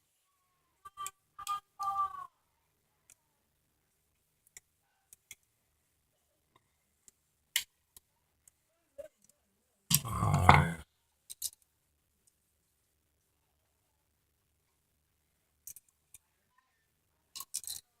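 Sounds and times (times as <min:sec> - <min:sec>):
faint clicks and taps: 0:04.1 - 0:05.6.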